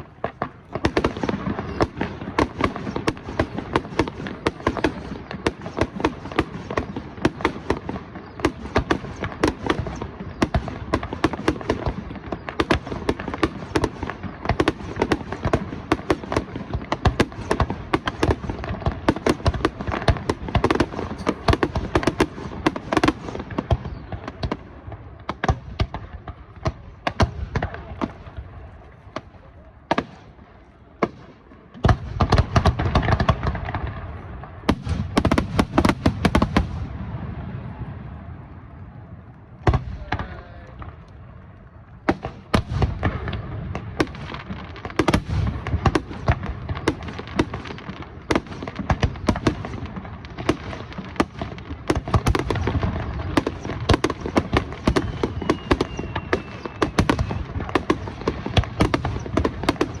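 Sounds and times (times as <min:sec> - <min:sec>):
fireworks booms and crackles: 0:00.0 - 1:00.0.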